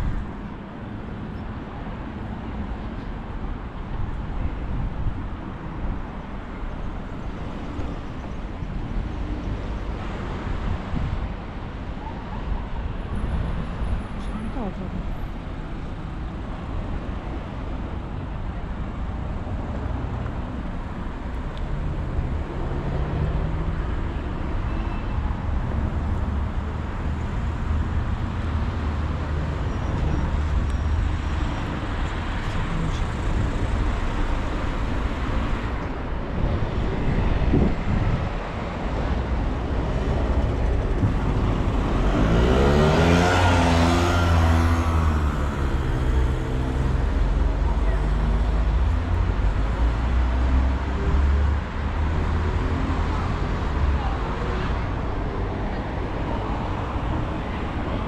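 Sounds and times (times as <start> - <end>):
road traffic rumble: 0.0 - 58.0
vehicle passing close: 39.7 - 47.7.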